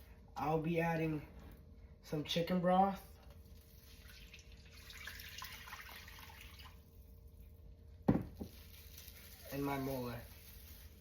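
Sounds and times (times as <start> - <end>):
liquid pouring into a pan: 3.5 - 7.1.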